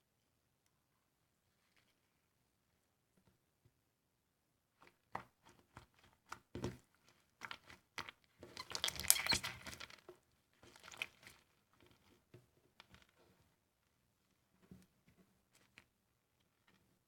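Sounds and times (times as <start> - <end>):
slime crackling and popping: 7.5 - 10.0.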